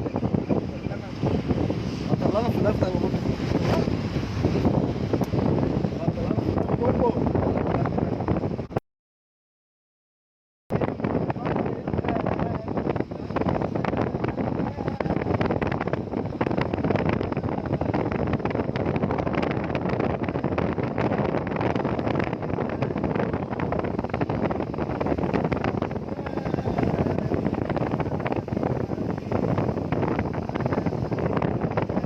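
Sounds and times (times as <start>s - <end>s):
wind buffeting microphone: 0.0s - 8.8s, 10.7s - 32.0s
heavy rain: 10.8s - 32.0s.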